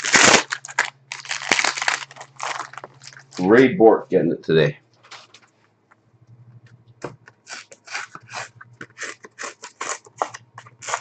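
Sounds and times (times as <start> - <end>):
thick card tearing: 7.4 - 11.0.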